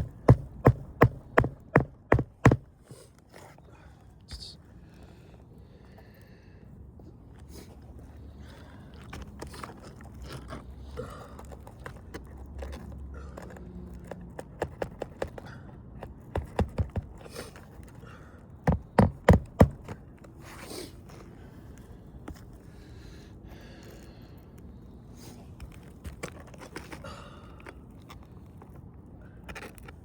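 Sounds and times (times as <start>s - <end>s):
hammer driving nails: 0.0s - 2.7s, 18.7s - 20.0s.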